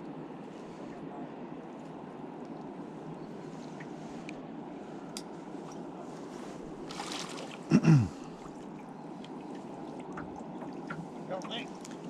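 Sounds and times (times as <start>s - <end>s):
river water rushing: 6.6s - 8.7s.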